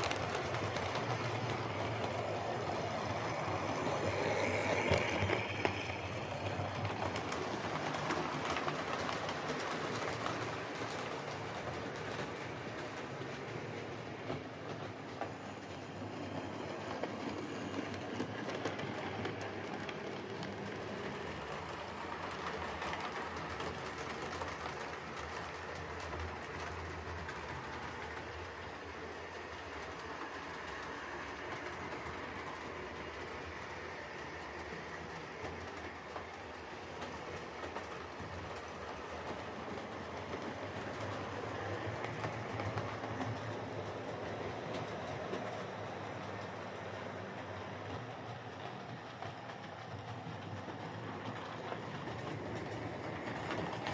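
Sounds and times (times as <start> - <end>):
wheels clicking on rails: 0.0 - 53.9.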